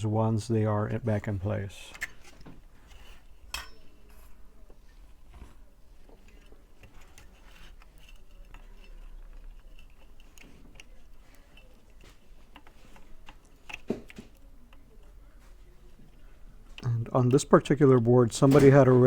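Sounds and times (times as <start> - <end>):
hand tools clicking and tapping: 1.9 - 4.4, 5.3 - 15.2.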